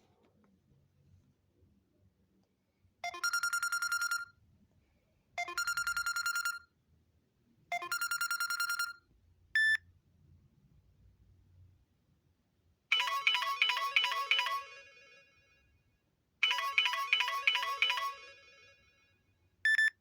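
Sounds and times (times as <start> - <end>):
trilling phone ringtone: 3.0 - 4.3, 5.4 - 6.6, 12.9 - 15.5, 16.4 - 19.1.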